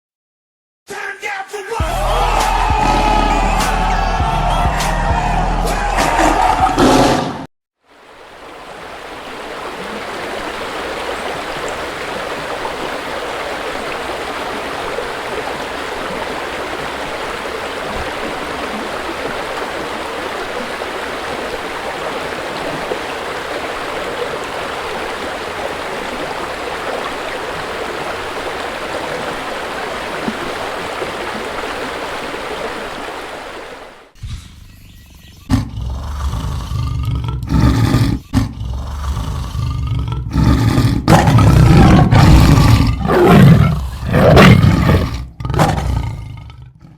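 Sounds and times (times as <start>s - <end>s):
river water rushing: 7.9s - 34.2s, 40.3s - 45.3s.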